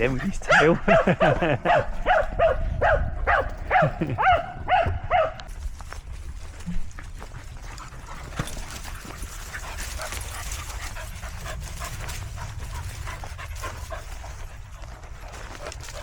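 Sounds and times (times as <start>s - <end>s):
dog panting: 0.0s - 2.0s, 6.3s - 16.0s.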